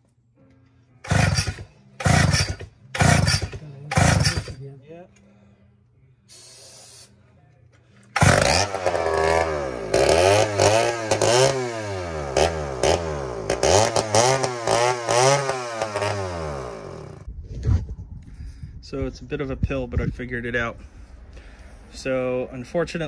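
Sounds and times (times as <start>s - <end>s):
chainsaw engine revving: 1.0s - 4.6s, 8.1s - 17.3s.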